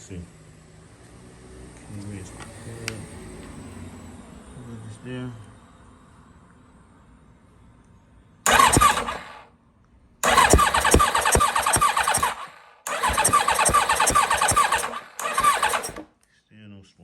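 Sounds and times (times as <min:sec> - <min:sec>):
electric starter cranking engine: 0:08.5 - 0:09.4, 0:10.2 - 0:16.1.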